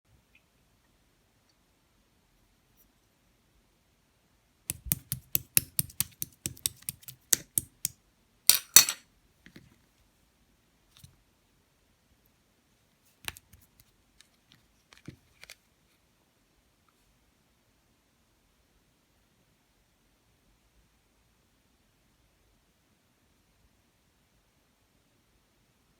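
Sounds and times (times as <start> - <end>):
slime clicking and popping: 4.7 - 7.9.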